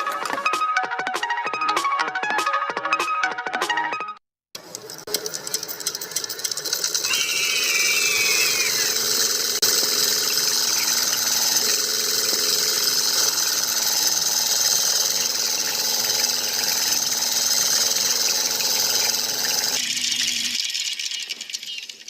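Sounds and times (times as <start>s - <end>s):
small motor whirring: 5.1s - 20.6s.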